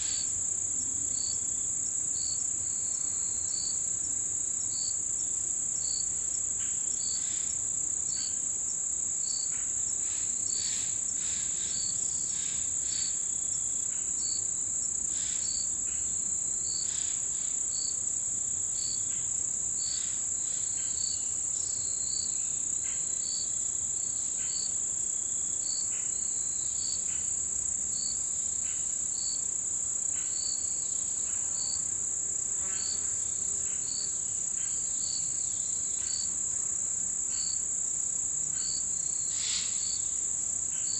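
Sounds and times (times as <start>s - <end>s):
high-pitched insect trill: 0.0s - 40.9s
thin lower insect calls: 9.2s - 31.8s, 37.2s - 40.9s
short insect chirp: 9.3s - 18.0s, 38.5s - 40.9s.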